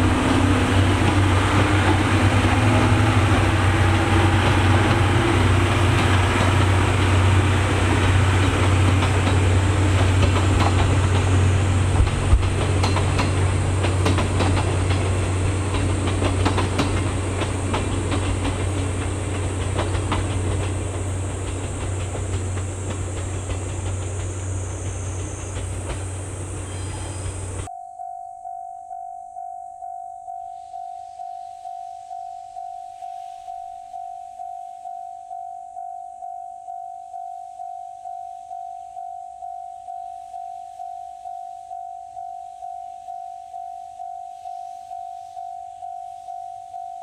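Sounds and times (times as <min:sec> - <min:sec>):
train low hum: 0:00.0 - 0:27.7
wheels clicking over rails: 0:00.0 - 0:27.7.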